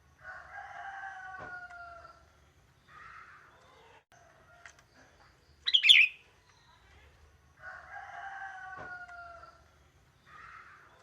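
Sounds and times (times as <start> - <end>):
bird chirpy song: 4.8 - 7.1.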